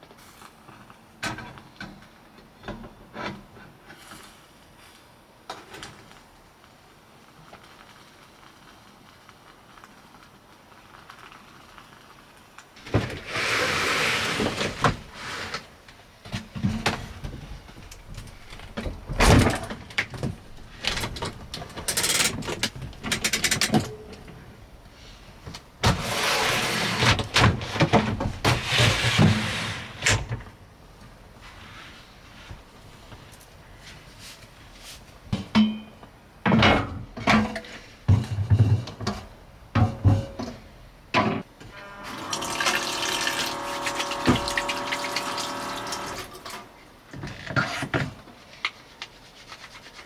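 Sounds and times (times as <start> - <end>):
faint steady rain: 0.0 - 19.3
rustling and sliding objects: 12.8 - 35.4, 46.0 - 50.0.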